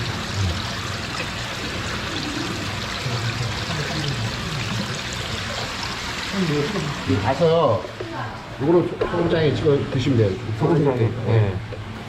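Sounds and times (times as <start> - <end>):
running water pouring: 0.0 - 7.8.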